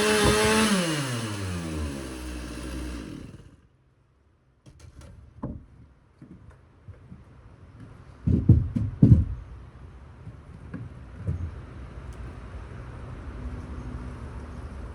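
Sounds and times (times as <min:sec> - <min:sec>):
heavy knocks: 0:00.0 - 0:00.7.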